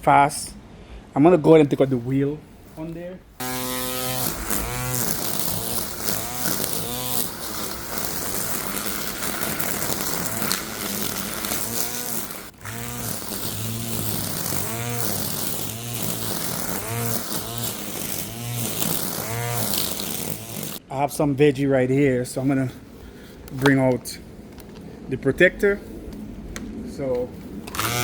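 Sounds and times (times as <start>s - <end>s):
string trimmer motor whine: 3.4s - 20.8s, 27.7s - 28.0s.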